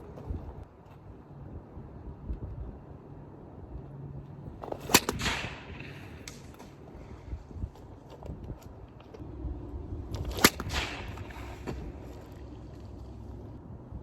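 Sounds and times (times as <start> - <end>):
sling crack: 4.8 - 6.8, 10.2 - 13.2.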